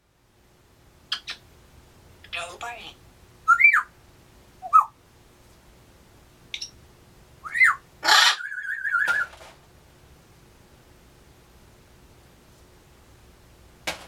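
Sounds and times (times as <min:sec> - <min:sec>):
parrot warbling trill: 0:03.5 - 0:03.9, 0:07.4 - 0:09.2
parrot whistling: 0:03.5 - 0:03.9, 0:04.6 - 0:05.0, 0:07.4 - 0:09.2
parrot harsh call: 0:07.4 - 0:09.3.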